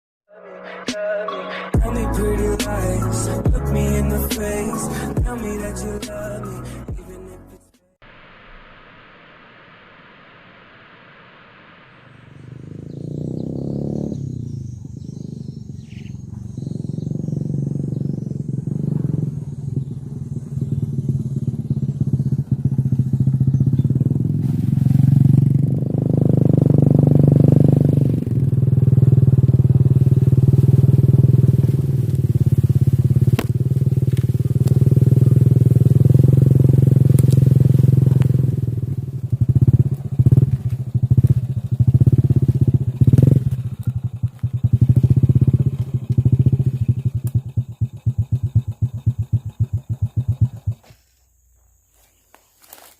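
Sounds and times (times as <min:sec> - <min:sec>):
small petrol engine running: 0:12.2 - 0:51.0.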